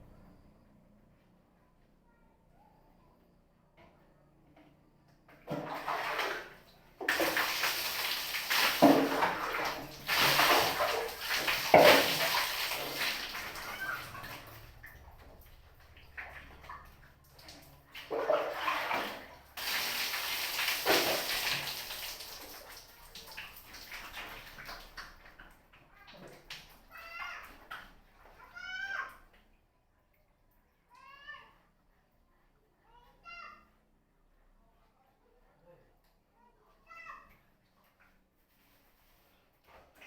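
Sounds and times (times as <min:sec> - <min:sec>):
water pouring and splashing: 0:05.4 - 0:28.4.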